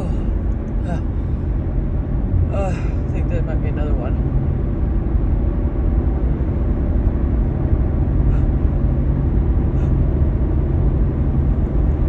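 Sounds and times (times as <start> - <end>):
low background rumble: 0.0 - 12.0
faint short breaths: 8.3 - 8.6, 9.8 - 10.0.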